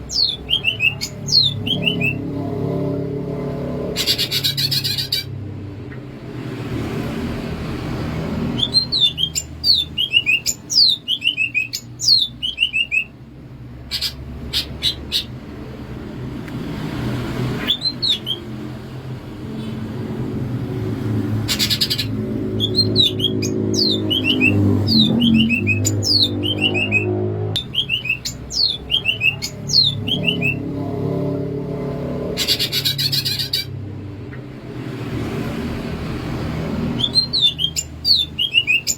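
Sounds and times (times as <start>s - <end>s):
bird whistling song: 0.0s - 2.3s, 8.5s - 13.1s, 13.9s - 15.3s, 17.6s - 18.6s, 21.5s - 30.7s, 32.4s - 33.7s, 36.9s - 38.9s.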